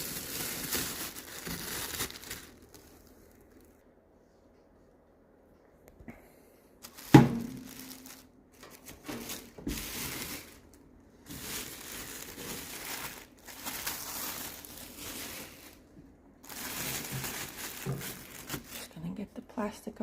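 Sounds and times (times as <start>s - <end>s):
plastic packaging crinkling and tearing: 0.0s - 3.8s, 6.8s - 19.0s.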